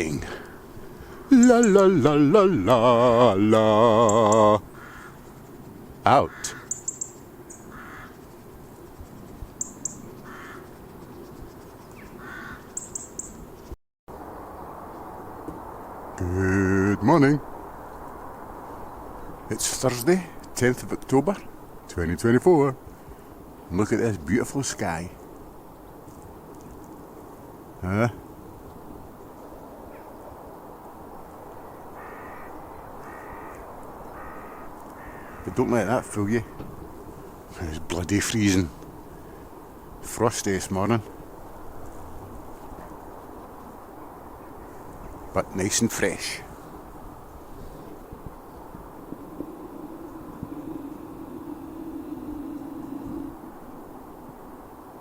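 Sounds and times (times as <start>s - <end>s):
bird calling: 0.0s - 13.8s, 31.4s - 55.0s
steady background hiss: 0.0s - 55.0s
steady low background noise: 0.0s - 55.0s
crow cawing: 4.7s - 5.3s, 6.2s - 8.2s, 10.2s - 10.7s, 12.0s - 13.1s, 31.7s - 35.7s, 49.0s - 53.7s.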